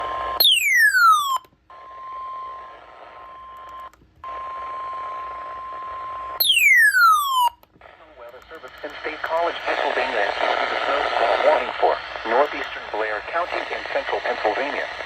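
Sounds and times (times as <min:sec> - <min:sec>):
electronic chirp sweeping downward: 0:00.4 - 0:01.4, 0:06.4 - 0:07.5
receiver hiss: 0:07.8 - 0:15.0.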